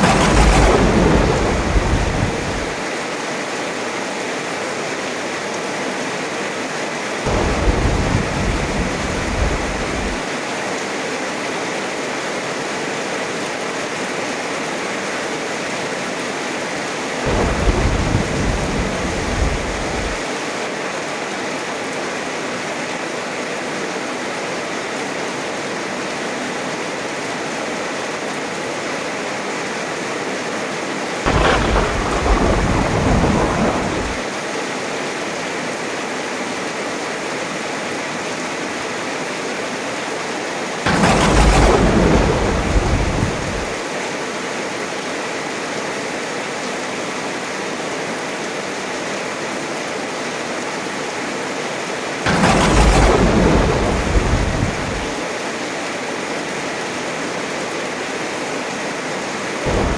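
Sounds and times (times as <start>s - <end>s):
thunder rumbling: 0.0s - 2.8s, 7.3s - 10.3s, 17.3s - 20.3s, 31.3s - 34.3s, 40.9s - 43.8s, 52.3s - 55.3s, 59.7s - 59.9s
heavy rain: 0.0s - 59.9s.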